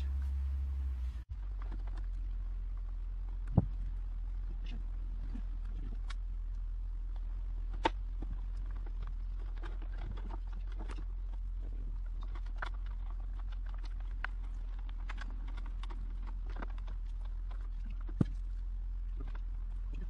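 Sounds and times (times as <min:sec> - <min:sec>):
steady low hum: 0:00.0 - 0:20.0
sticky tape crackling and clicking: 0:04.6 - 0:20.0.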